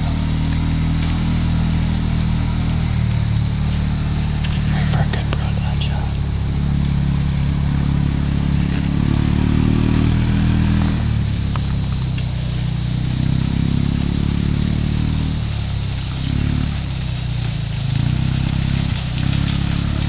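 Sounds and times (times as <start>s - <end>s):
engine humming: 0.0s - 20.0s
high-pitched hiss: 0.0s - 20.0s.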